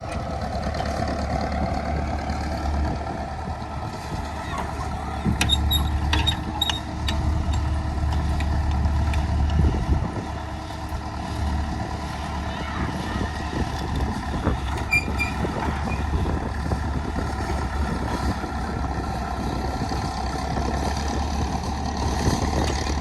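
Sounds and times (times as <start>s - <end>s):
low mechanical rumble: 0.0s - 23.0s
sharp clicks and knocks: 5.3s - 9.6s.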